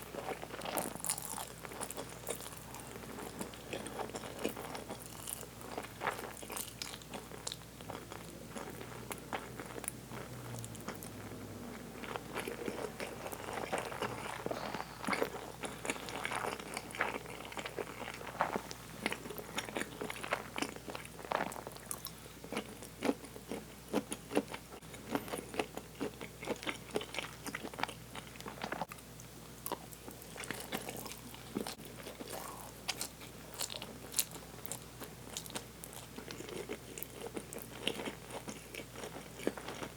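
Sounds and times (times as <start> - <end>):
chewing noodles: 0.1 - 28.9.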